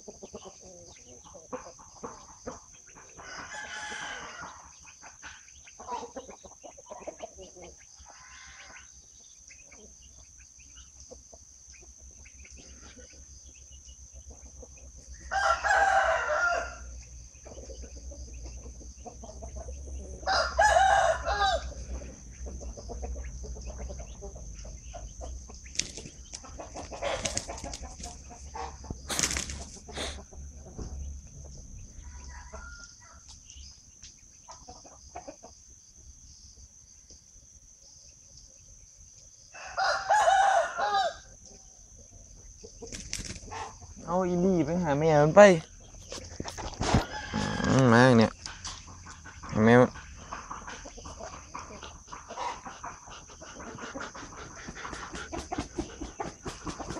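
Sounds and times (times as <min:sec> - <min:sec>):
chicken clucks: 0:00.0 - 0:37.3, 0:38.1 - 0:56.9
rooster crowing: 0:03.2 - 0:04.8, 0:15.1 - 0:17.0, 0:20.0 - 0:22.0, 0:31.9 - 0:33.3, 0:39.5 - 0:41.3, 0:46.8 - 0:48.3
wings flapping: 0:25.6 - 0:28.2, 0:28.9 - 0:30.2, 0:42.9 - 0:43.6, 0:54.5 - 0:56.9.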